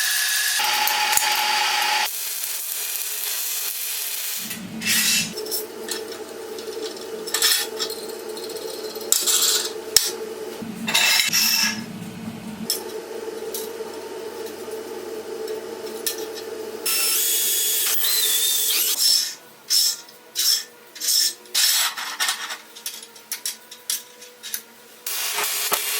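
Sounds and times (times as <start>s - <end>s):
power tool running: 0.4s - 8.5s, 9.1s - 12.9s, 16.1s - 19.0s.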